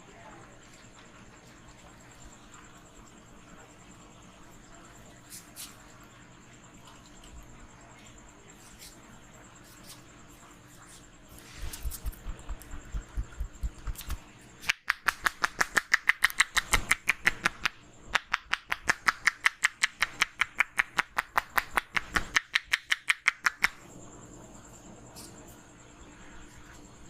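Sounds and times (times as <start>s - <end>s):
hands slapping head: 11.8s - 23.8s.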